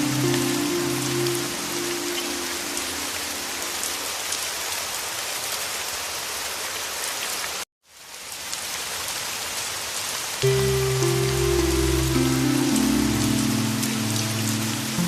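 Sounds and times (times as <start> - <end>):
soft sustained music: 0.0 - 4.0, 10.4 - 15.0
heavy rain falling: 0.0 - 15.0.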